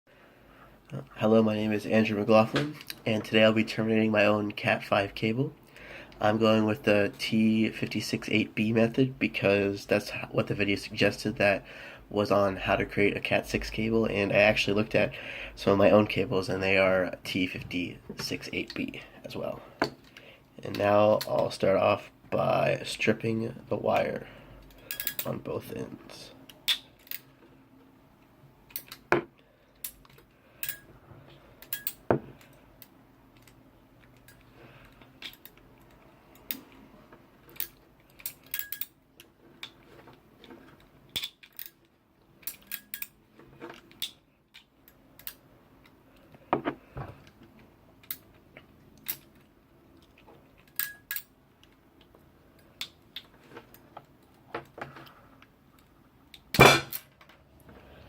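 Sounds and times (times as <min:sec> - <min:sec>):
hand tool clicks and clinks: 0:24.9 - 0:25.3, 0:29.8 - 0:30.8, 0:37.6 - 0:38.9.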